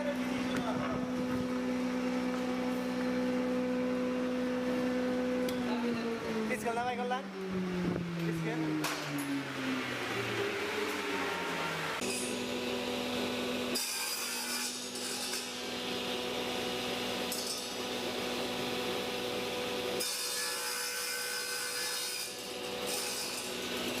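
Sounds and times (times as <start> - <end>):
motor hum: 0.0 - 13.8
thickness planer cutting wood: 9.8 - 24.0.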